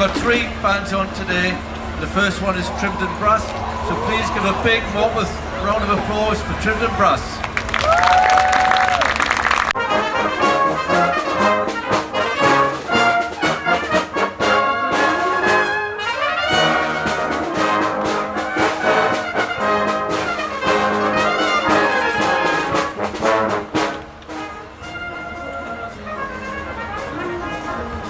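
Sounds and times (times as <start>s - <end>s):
brass band playing rock: 9.1s - 28.0s.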